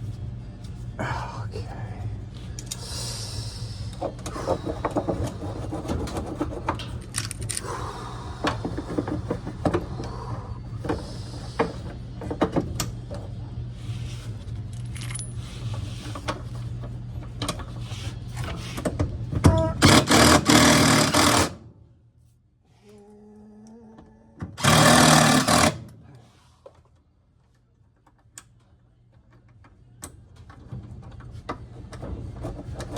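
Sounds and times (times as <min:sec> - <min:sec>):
steady low hum: 0:00.0 - 0:32.9
metal tools clinking: 0:14.8 - 0:15.4.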